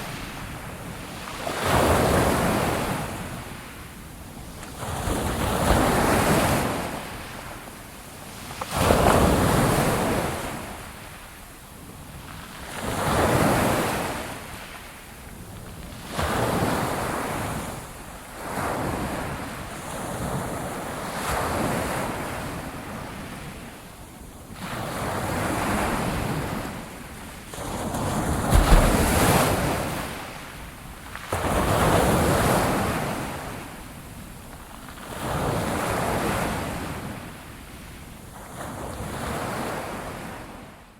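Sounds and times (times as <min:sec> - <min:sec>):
ocean waves crashing on shore: 0:28.1 - 0:30.5.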